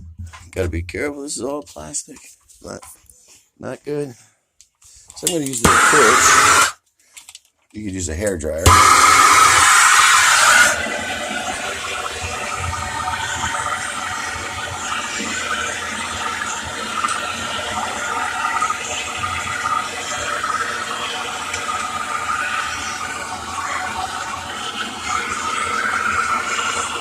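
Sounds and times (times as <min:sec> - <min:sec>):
gas torch flame hissing: 0:05.6 - 0:06.8, 0:08.6 - 0:27.0.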